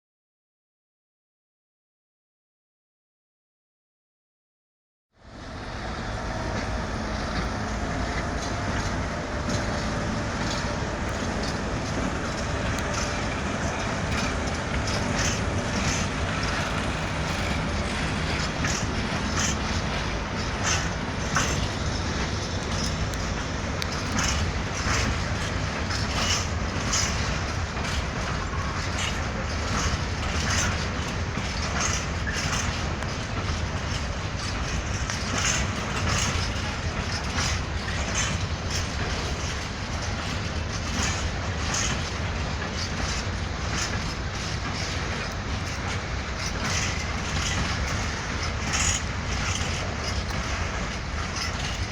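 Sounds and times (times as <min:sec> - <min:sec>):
freight train rumbling: 0:05.2 - 0:51.9
train wheels clacking on rail joints: 0:05.2 - 0:51.9.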